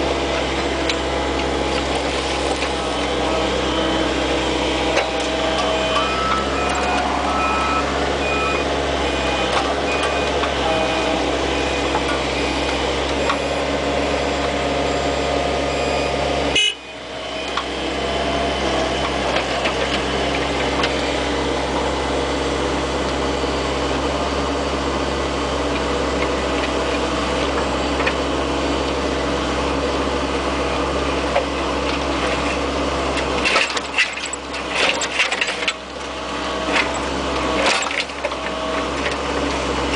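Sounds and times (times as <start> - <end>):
excavator diesel engine running: 0.0 - 39.9
short beeps: 5.7 - 16.8.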